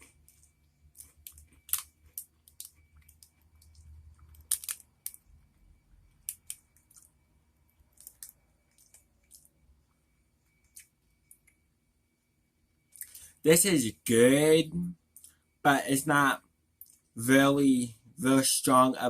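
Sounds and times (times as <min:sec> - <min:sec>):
mouth chewing clicks and smacks: 0:07.9 - 0:09.6, 0:10.5 - 0:11.6, 0:12.9 - 0:13.2, 0:16.8 - 0:17.1.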